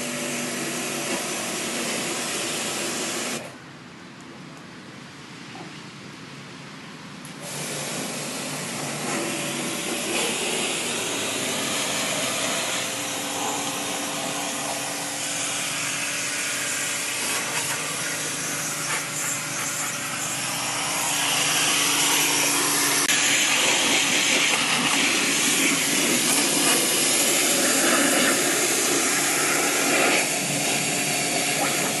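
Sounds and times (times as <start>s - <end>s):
pressure washer jet hissing: 7.4s - 32.0s.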